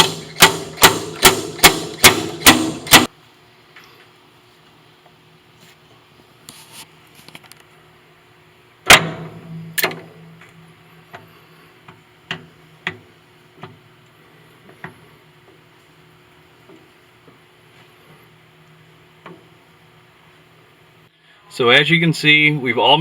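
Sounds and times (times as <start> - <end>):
slide hammer metallic clank: 0.0 - 3.1.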